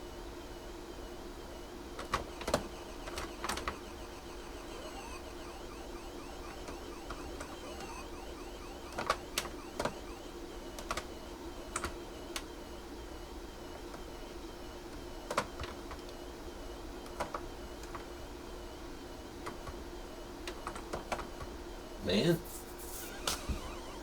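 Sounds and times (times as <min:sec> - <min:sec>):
wavering siren-like game tone: 0:02.1 - 0:11.7, 0:22.5 - 0:24.0.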